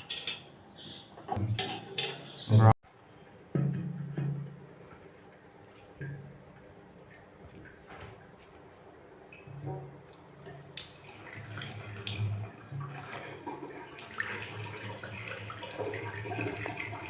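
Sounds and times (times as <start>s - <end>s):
tap water running into sink: 9.5s - 17.0s.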